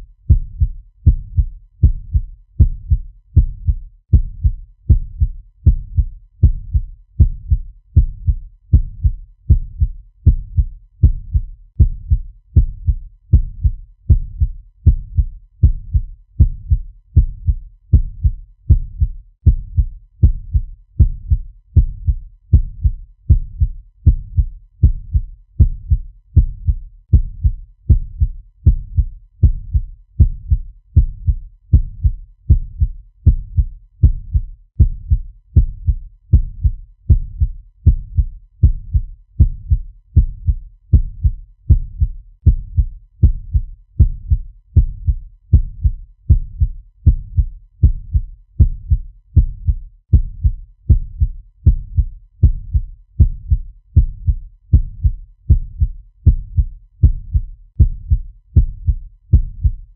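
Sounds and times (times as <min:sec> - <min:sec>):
fast heartbeat thumps: 0:00.0 - 0:59.9.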